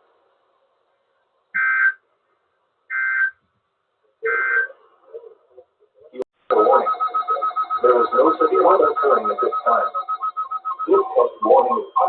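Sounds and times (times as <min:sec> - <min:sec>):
two-tone digital warble bursts: 0:06.5 - 0:12.0.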